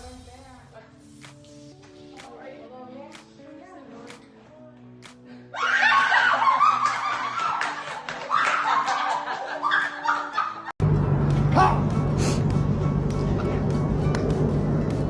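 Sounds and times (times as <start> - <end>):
quiet background music: 0.0 - 15.0
person laughing hard: 5.6 - 10.7.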